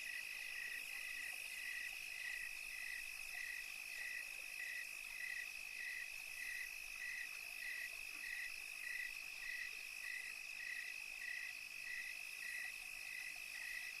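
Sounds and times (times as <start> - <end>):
insect pulsed chirp: 0.0 - 14.0.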